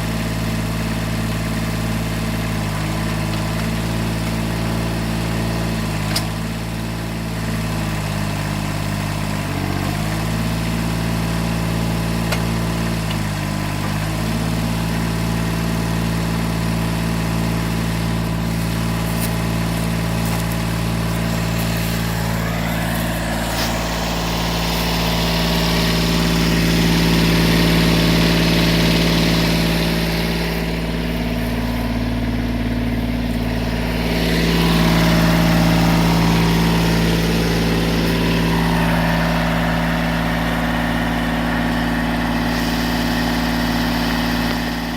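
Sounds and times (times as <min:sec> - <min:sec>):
tractor diesel engine running: 0:00.0 - 0:44.9
hydraulic hiss: 0:21.0 - 0:26.7, 0:41.8 - 0:44.8.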